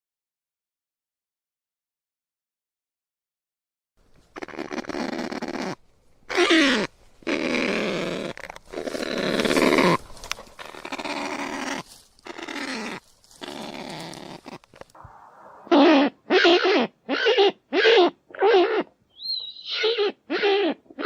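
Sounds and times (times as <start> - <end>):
loud animal calls: 4.4 - 21.0.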